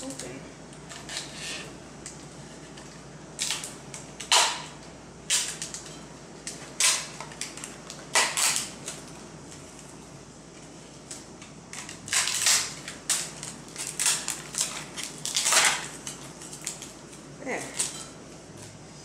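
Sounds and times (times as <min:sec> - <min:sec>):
plastic packaging crinkling: 0:11.7 - 0:18.0.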